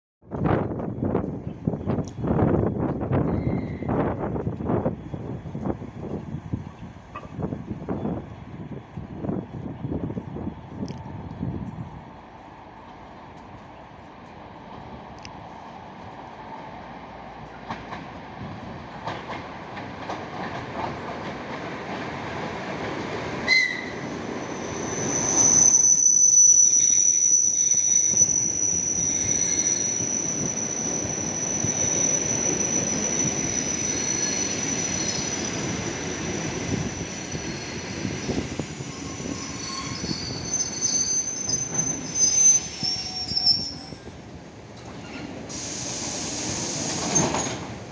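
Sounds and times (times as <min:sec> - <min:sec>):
train wheels rumbling on rail: 0:00.3 - 0:47.9
high squeal of wheels and brakes: 0:03.2 - 0:04.1, 0:23.5 - 0:44.1, 0:45.0 - 0:47.7.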